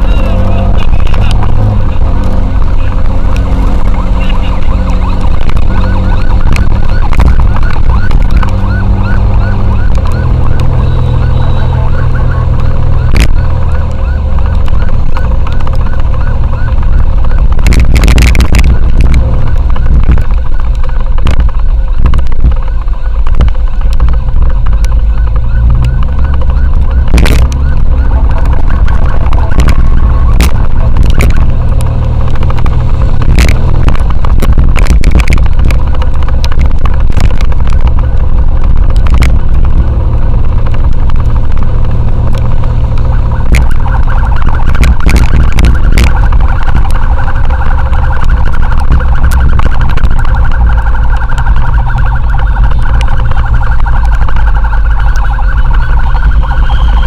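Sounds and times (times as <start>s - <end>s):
ambulance siren: 0.0s - 57.0s
motorcycle engine: 0.0s - 57.0s
wind rumble on microphone: 0.0s - 57.0s.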